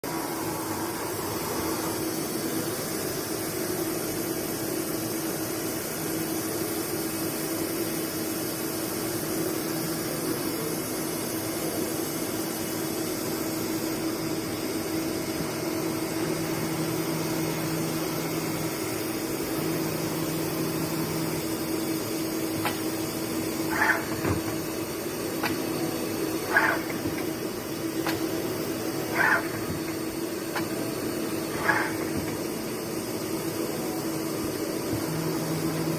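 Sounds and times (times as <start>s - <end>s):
machine hum: 0.0s - 8.1s, 8.7s - 35.9s.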